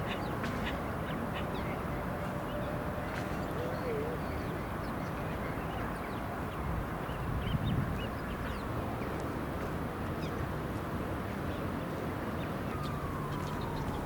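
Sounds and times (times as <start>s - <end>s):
distant city traffic hum: 0.0s - 14.0s
birds chirping: 11.4s - 14.0s
siren: 12.4s - 14.0s.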